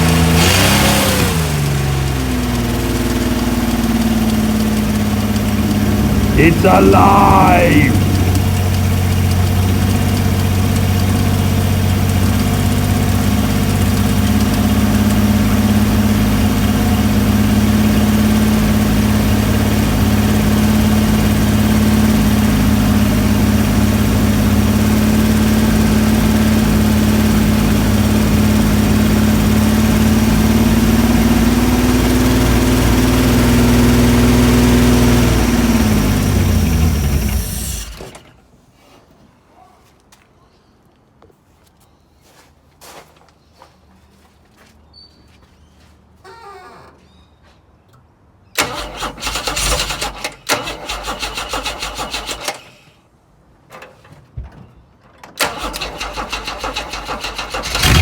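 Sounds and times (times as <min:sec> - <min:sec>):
engine winding down: 0:00.0 - 0:38.3, 0:48.6 - 0:52.8, 0:55.4 - 0:58.0
car engine idling: 0:01.6 - 0:38.0, 0:56.6 - 0:58.0.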